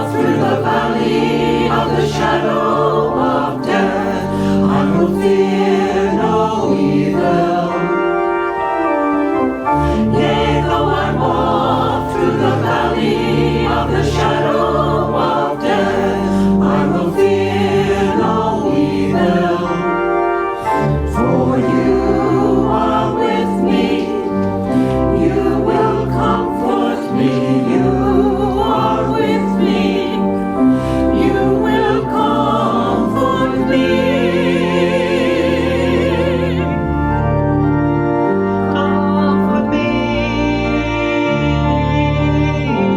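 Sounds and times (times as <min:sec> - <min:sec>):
choir singing a hymn: 0:00.0 - 0:42.9
organ: 0:00.0 - 0:42.9.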